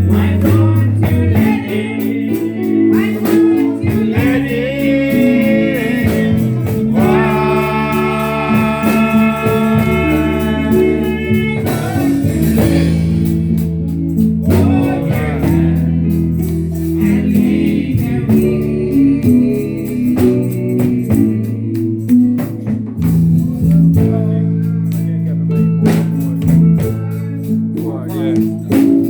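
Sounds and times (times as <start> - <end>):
person singing: 0.0 - 22.8
bass guitar: 0.0 - 29.0
guitar: 0.0 - 29.0
steady drum beat: 0.0 - 29.0.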